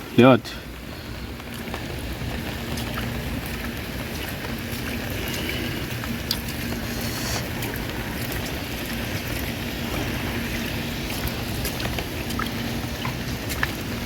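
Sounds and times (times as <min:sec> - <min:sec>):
faint steady hum: 0:00.0 - 0:14.0
heavy rain in windy storm: 0:00.0 - 0:14.0.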